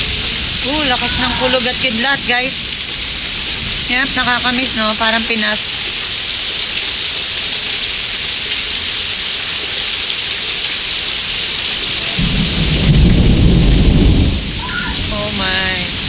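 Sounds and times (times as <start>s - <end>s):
deep rumble of thunder: 0.0s - 5.4s, 11.8s - 16.0s
heavy rain pouring: 0.0s - 16.0s.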